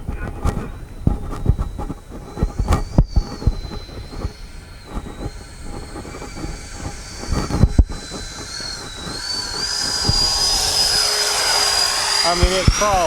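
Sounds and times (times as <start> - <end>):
electric ducted fans whining: 0.0 - 13.0
wind buffeting microphone: 0.0 - 13.0.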